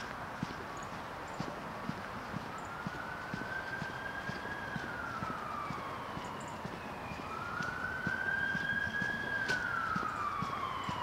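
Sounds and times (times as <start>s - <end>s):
walking footsteps: 0.0s - 11.0s
emergency siren wailing: 1.8s - 11.0s.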